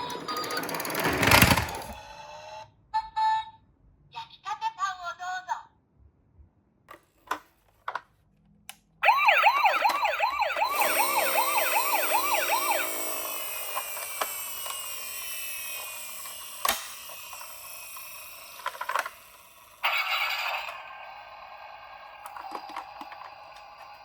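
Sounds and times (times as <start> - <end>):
toy siren wailing: 9.0 - 16.7, 19.8 - 21.2.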